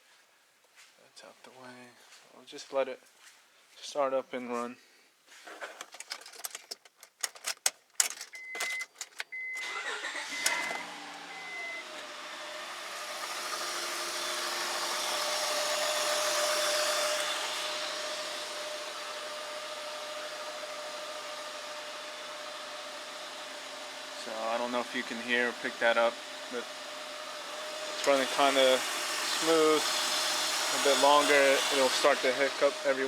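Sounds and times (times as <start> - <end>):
car engine cranking and starting: 5.8 - 21.4, 22.5 - 33.0
car engine idling with whine: 9.6 - 16.4.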